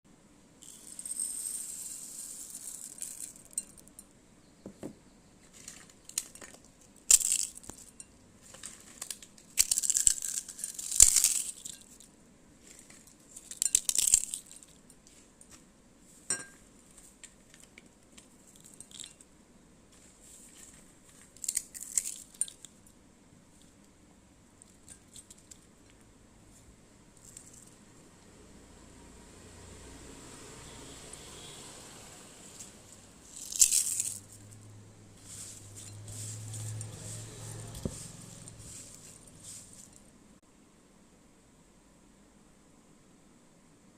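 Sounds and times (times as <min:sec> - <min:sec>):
puffed rice rustling: 0:00.6 - 0:03.8, 0:05.4 - 0:12.0, 0:12.6 - 0:16.2, 0:19.9 - 0:22.6, 0:32.4 - 0:40.1
utensils clinking: 0:33.3 - 0:34.5, 0:35.2 - 0:40.0.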